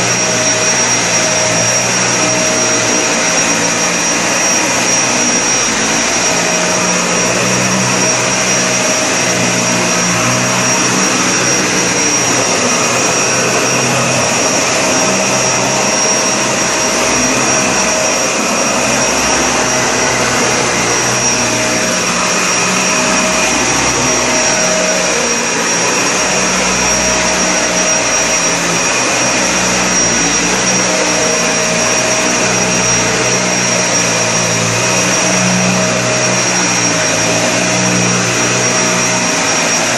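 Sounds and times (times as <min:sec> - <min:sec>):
high whine: 0:00.0 - 0:39.9
lower tone: 0:00.0 - 0:39.9
vacuum cleaner running: 0:00.0 - 0:39.9.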